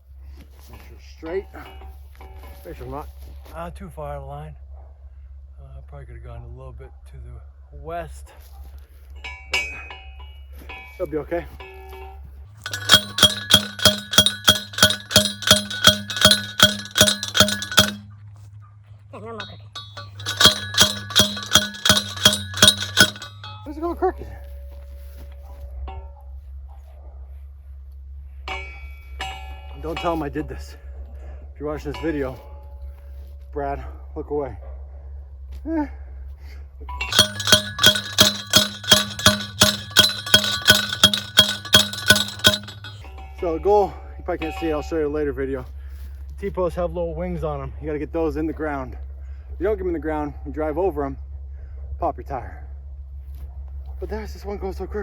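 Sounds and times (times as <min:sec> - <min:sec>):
post pounder clanking on metal: 0:12.6 - 0:18.1, 0:19.2 - 0:23.8, 0:28.5 - 0:30.3, 0:36.9 - 0:43.5.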